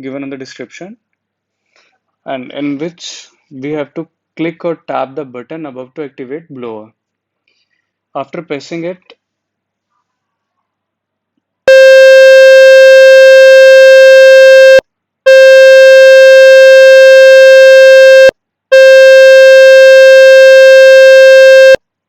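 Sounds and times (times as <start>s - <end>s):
loud buzzy tone: 11.7s - 21.8s.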